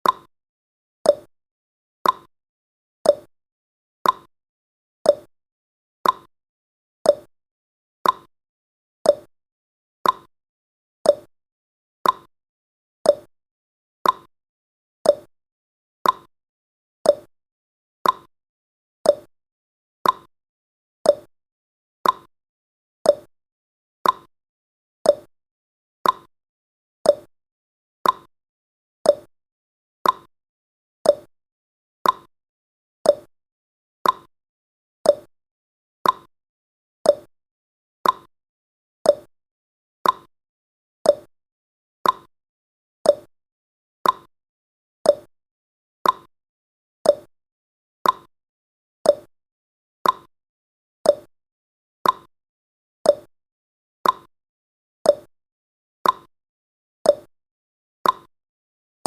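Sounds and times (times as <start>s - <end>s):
clock ticking: 18.0s - 18.3s, 34.0s - 34.3s, 42.0s - 42.3s, 50.0s - 50.3s.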